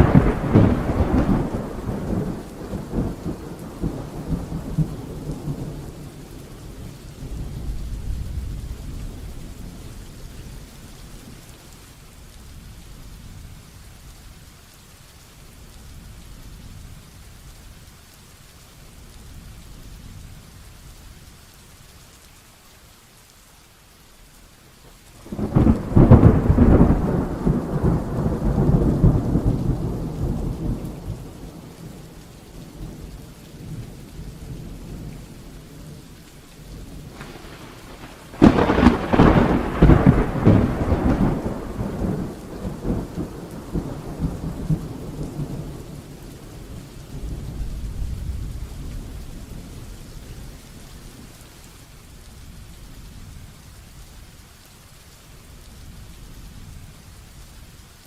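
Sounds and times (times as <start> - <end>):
thunder rumbling: 0.0 - 10.4, 25.2 - 51.3
heavy rain falling: 0.0 - 58.0.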